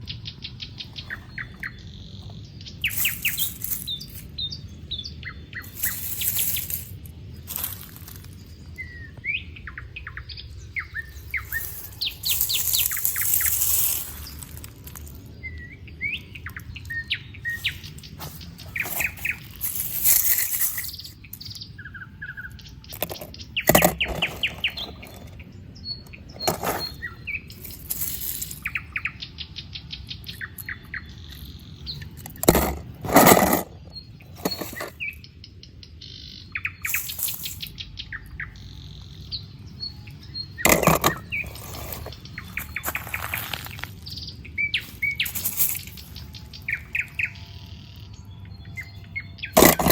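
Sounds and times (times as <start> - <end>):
birds chirping: 0.0 - 49.9
dry leaves rustling: 2.8 - 4.4, 5.6 - 8.7, 10.6 - 15.6, 16.2 - 21.6, 22.9 - 25.4, 26.2 - 29.2, 32.2 - 35.1, 36.8 - 37.7, 40.6 - 48.1.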